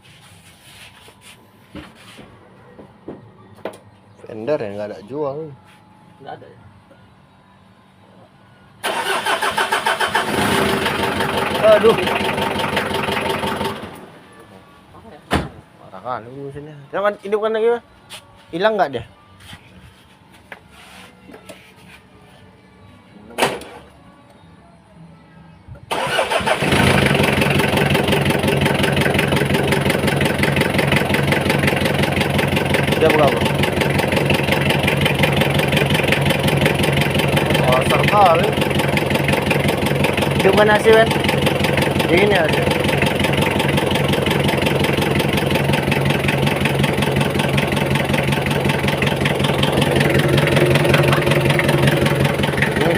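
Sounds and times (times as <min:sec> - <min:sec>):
diesel engine starting and running: 0:08.8 - 0:14.7, 0:25.8 - 0:52.9.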